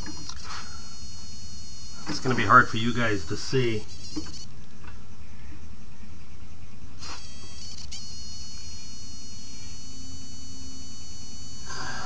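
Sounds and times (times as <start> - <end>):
wood lathe motor whine: 7.0 - 12.0.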